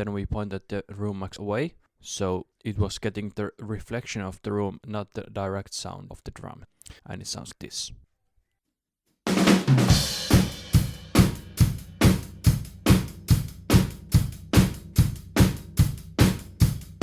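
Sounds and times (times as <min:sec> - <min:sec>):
drum kit playing beat: 0:09.3 - 0:17.0
cymbal crash: 0:09.9 - 0:12.7.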